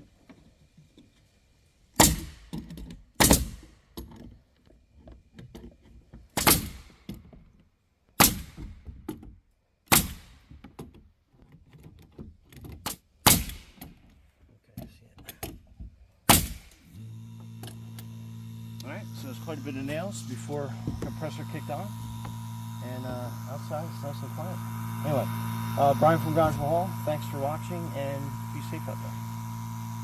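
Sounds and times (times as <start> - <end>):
nail gun shots: 2.0 - 2.5, 3.2 - 3.7, 6.4 - 7.0, 8.2 - 8.7, 9.9 - 10.4, 13.2 - 13.9, 16.3 - 16.8.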